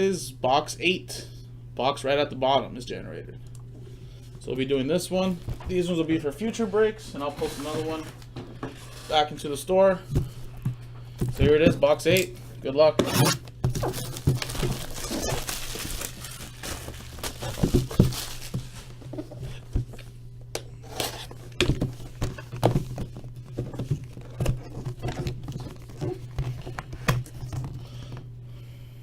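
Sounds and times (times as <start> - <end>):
steady low hum: 0.0 - 29.0
box being handled: 13.0 - 20.0
plastic wrap crinkling and tearing: 13.1 - 19.7.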